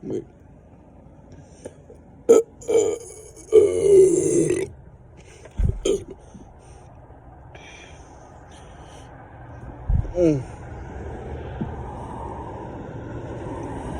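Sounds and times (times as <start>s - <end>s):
person burping: 2.3s - 4.8s, 5.6s - 6.2s.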